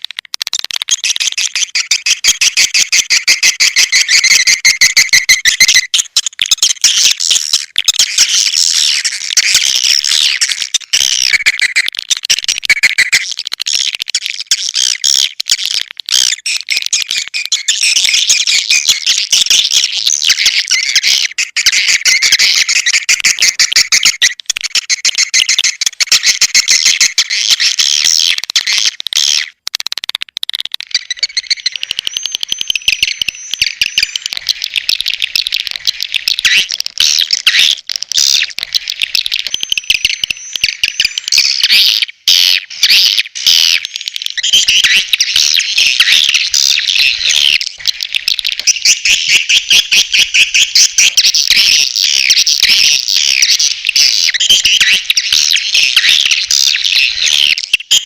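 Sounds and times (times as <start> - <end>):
rapid clicks: 0.0 - 2.6, 28.0 - 41.4, 43.8 - 54.2
swiftlets twittering: 0.9 - 13.4, 30.7 - 41.8, 43.8 - 57.6.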